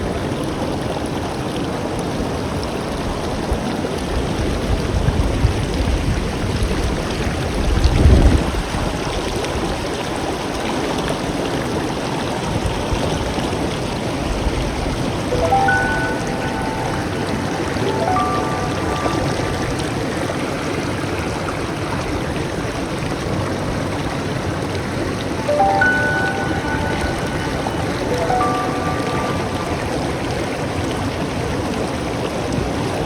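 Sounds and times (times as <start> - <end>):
river water flowing: 8.8 - 33.0.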